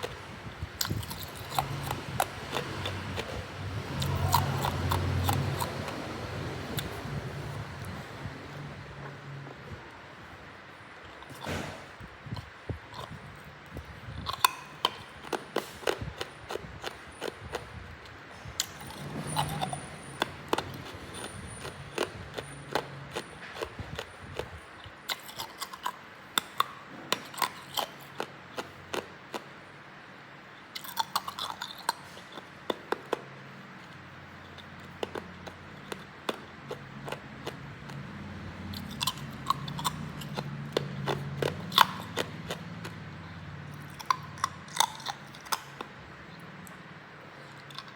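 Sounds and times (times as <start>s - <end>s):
ice being chewed: 0.0s - 8.8s, 12.2s - 29.6s, 30.6s - 47.9s.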